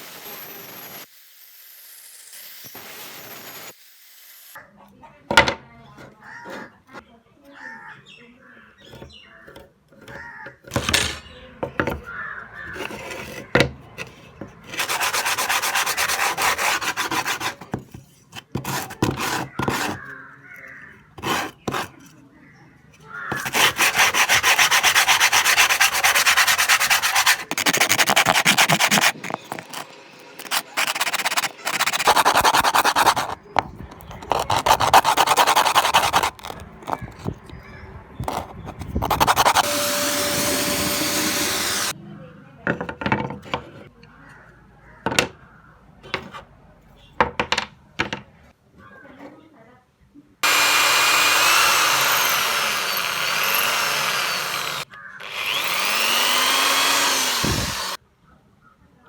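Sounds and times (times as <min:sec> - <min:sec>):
sandpaper rubbing on wood: 0:14.7 - 0:17.8, 0:18.4 - 0:20.1, 0:21.2 - 0:22.0, 0:23.3 - 0:33.4, 0:34.0 - 0:37.3, 0:38.2 - 0:41.9, 0:50.4 - 0:58.0.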